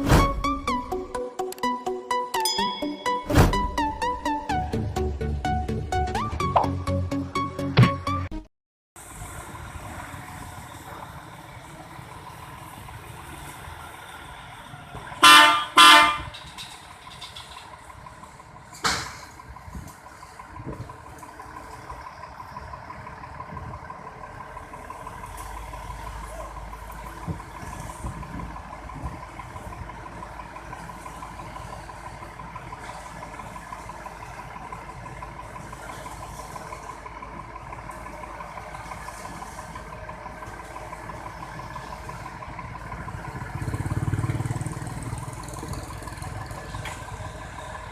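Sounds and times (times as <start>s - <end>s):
short sharp sound: 0.0s - 4.7s
engine hum: 0.0s - 47.9s
vehicle horn blasts: 15.2s - 16.4s.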